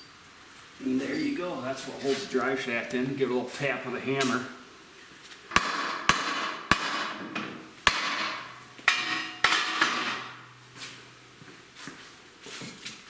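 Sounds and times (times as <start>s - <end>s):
hammer striking metal shaft: 7.9s - 10.4s.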